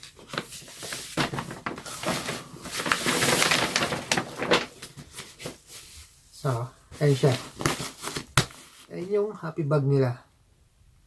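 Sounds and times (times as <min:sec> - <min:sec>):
bag packaging rustling: 0:00.1 - 0:05.9, 0:07.0 - 0:08.9.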